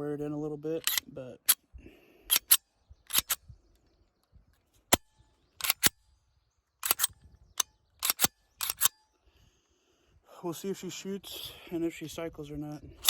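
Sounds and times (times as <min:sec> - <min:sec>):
pistol slide racking clicks: 0:00.8 - 0:01.6, 0:02.3 - 0:03.4, 0:05.6 - 0:06.0, 0:06.8 - 0:09.0.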